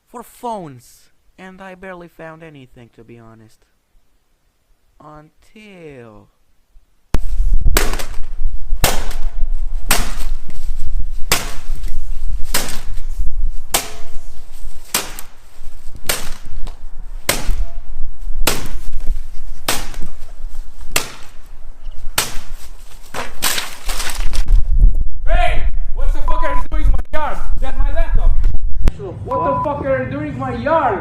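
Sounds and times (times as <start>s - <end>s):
heavy cracking blows: 7.2s - 25.6s
low rumble: 15.4s - 22.1s.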